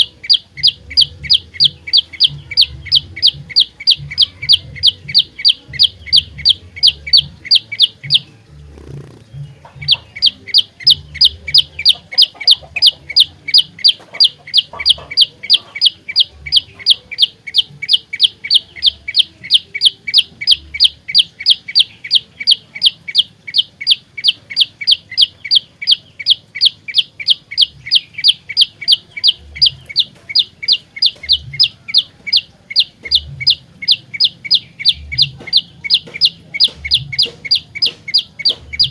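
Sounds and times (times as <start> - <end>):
bird calling sharp chips: 9.8 - 38.9.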